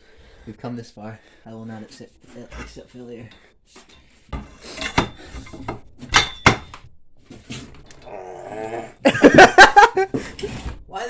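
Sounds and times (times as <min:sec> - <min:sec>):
vise scraping and creaking: 0:00.0 - 0:11.0
sharp metal knocks: 0:04.3 - 0:07.3.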